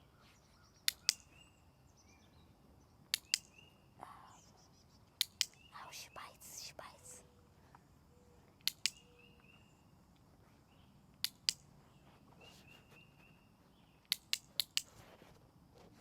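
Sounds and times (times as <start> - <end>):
faint bird chirps: 0.0 - 15.2
dog-training clicker clicks: 0.9 - 1.3, 3.1 - 3.6, 5.2 - 5.6, 8.6 - 9.1, 11.2 - 11.7, 14.1 - 14.9.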